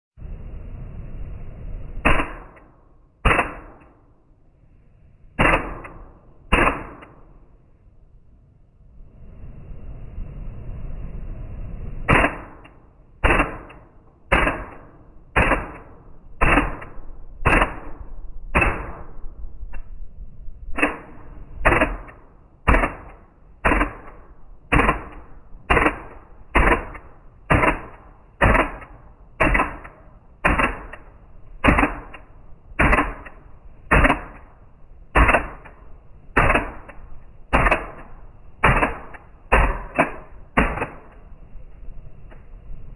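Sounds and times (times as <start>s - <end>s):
airsoft pistol shots: 2.0s - 4.0s, 5.4s - 7.3s, 12.1s - 19.2s, 20.8s - 35.8s, 36.4s - 41.2s.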